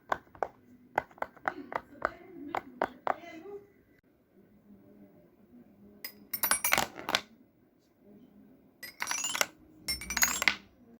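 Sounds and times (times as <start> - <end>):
small hard objects clinking and rattling: 8.8 - 10.6.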